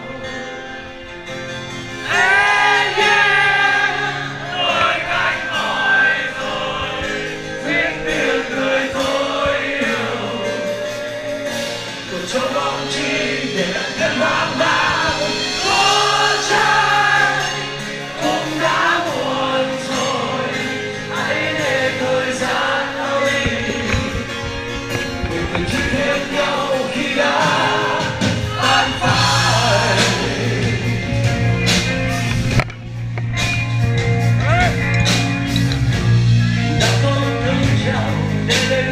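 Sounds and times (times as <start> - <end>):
live rock band: 0.0 - 38.9
voices singing: 2.0 - 32.4.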